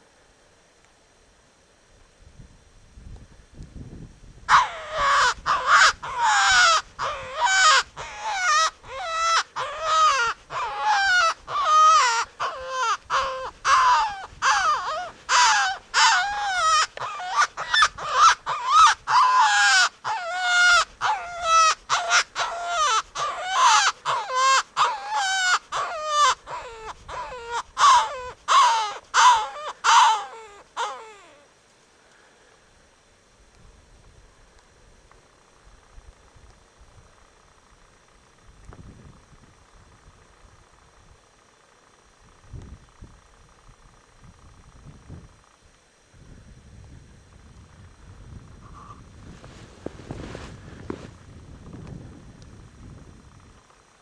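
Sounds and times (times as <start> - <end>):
harsh crow-like cawing calls: 4.5 - 31.5.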